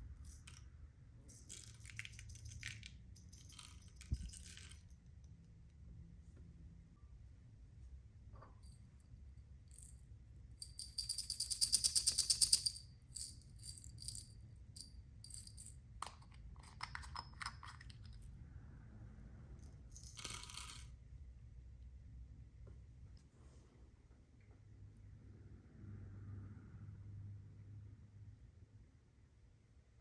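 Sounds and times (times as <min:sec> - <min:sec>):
small hard objects rattling: 0:01.3 - 0:04.8.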